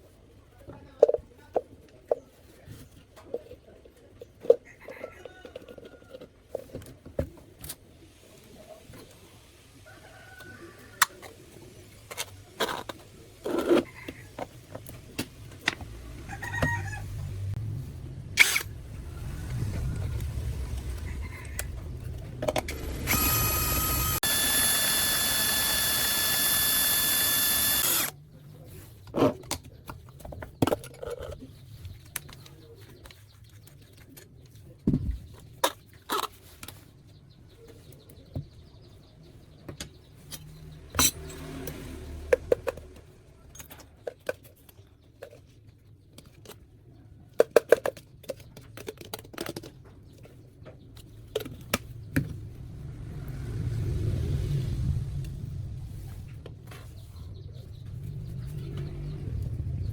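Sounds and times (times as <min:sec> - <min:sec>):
power tool whining: 0:18.4 - 0:21.0, 0:22.4 - 0:28.2.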